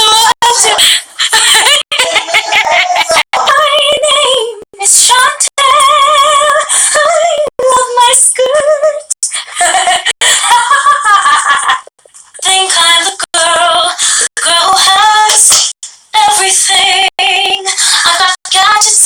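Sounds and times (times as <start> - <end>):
woman singing with vibrato: 0.0 - 1.0, 3.4 - 10.0, 12.4 - 15.6, 16.2 - 19.0.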